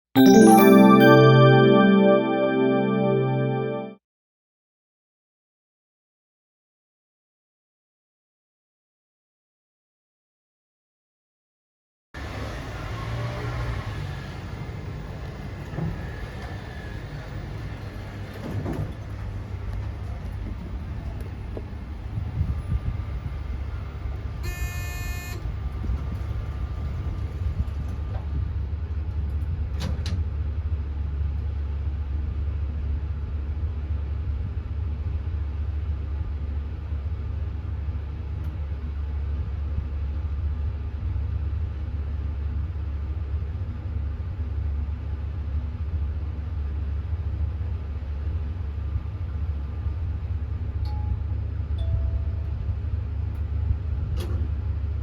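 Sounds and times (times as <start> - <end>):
elevator rumble: 13.7 - 24.4
electronic buzz-tone: 24.5 - 25.4.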